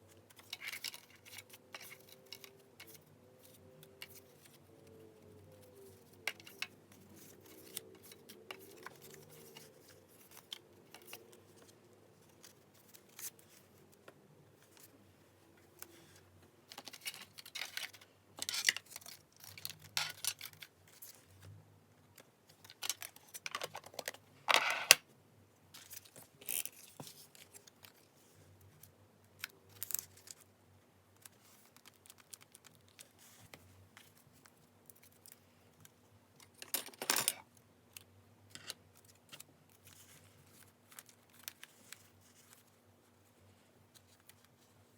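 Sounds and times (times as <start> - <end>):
paper rustling and crinkling: 5.4 - 15.0, 15.6 - 21.5, 39.0 - 44.9.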